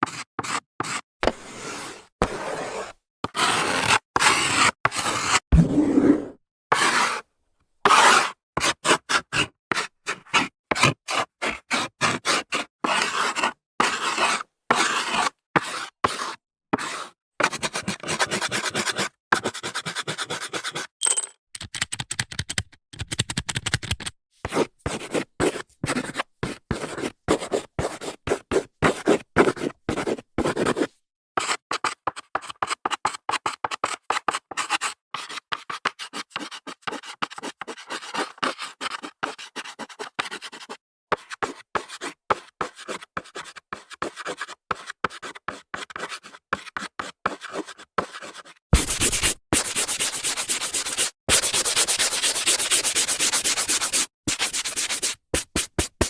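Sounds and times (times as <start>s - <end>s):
scraping on a blackboard: 0.8s - 7.3s, 7.9s - 8.4s, 46.9s - 56.0s.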